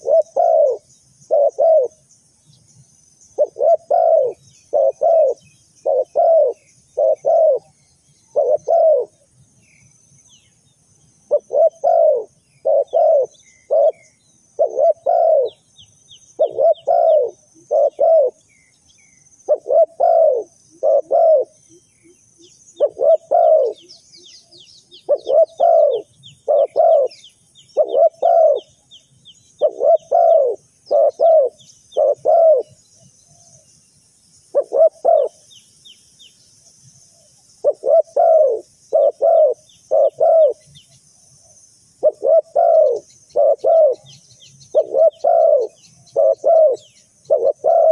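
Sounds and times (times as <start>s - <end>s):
dove cooing: 0.0s - 2.0s, 3.4s - 9.3s, 11.3s - 15.6s, 16.4s - 18.4s, 19.5s - 22.2s, 22.8s - 23.9s, 24.9s - 28.7s, 29.6s - 32.8s, 34.5s - 35.4s, 37.6s - 40.7s, 42.0s - 47.9s
faint high bird chirps: 0.0s - 47.9s.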